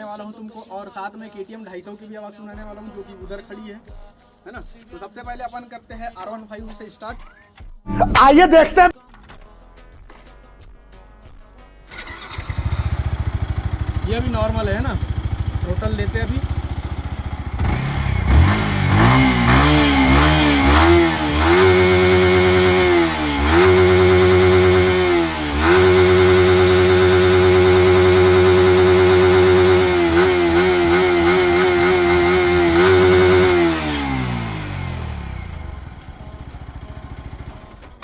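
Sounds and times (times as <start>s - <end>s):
motorcycle engine revving: 11.9s - 38.0s.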